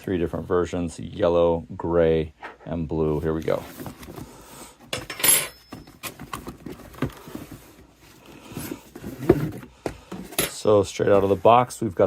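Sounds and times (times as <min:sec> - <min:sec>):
cardboard box scraping: 0:03.1 - 0:04.4, 0:05.7 - 0:10.4
packaging rustling: 0:05.6 - 0:10.4.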